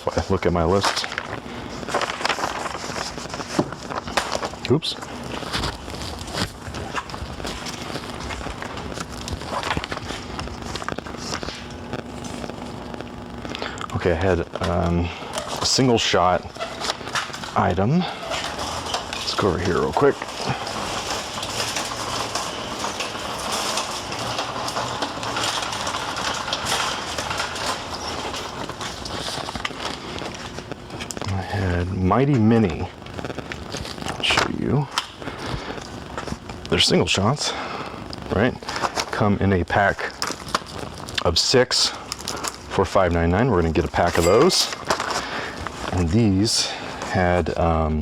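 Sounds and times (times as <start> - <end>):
shopping cart rattling: 17.6 - 30.4, 42.8 - 45.2.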